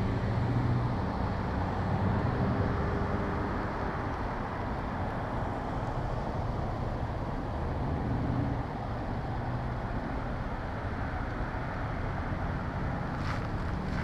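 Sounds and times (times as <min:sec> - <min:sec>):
car engine and road noise: 0:00.0 - 0:14.0.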